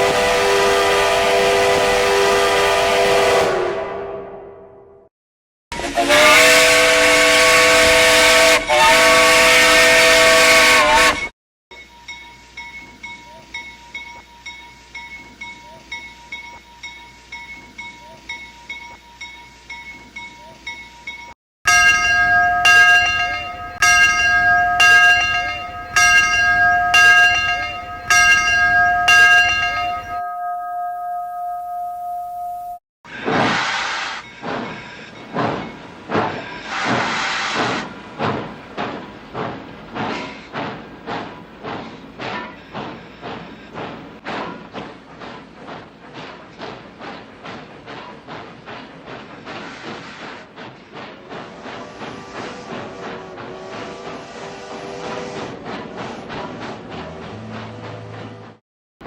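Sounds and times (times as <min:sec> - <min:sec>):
steam locomotive whistle: 0:00.0 - 0:04.7, 0:05.8 - 0:11.3, 0:51.8 - 0:55.6
locomotive bell ringing: 0:11.1 - 0:32.8.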